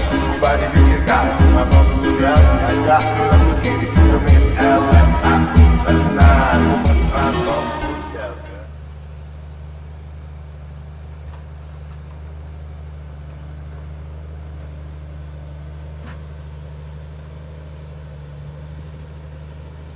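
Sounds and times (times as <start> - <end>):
heavy machinery engine humming: 0.0 - 19.9.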